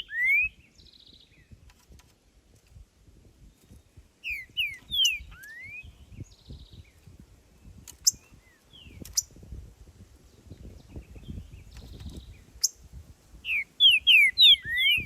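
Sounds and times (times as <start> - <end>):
bird whistling song: 0.0 - 1.6, 4.2 - 7.0, 13.4 - 15.0.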